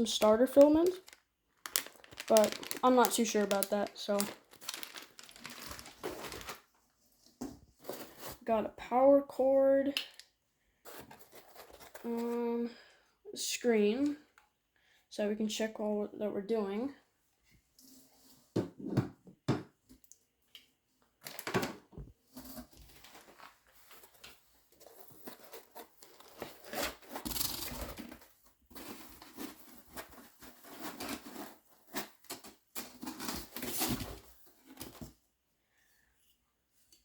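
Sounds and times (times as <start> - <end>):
packaging rustling: 0.0 - 6.8, 22.4 - 35.1.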